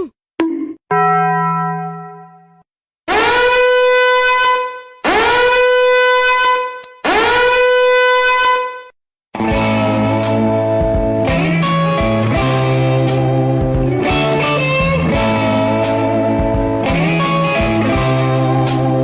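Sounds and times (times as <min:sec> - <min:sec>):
low tone: 0:00.0 - 0:02.7
long horn blasts: 0:03.1 - 0:08.9.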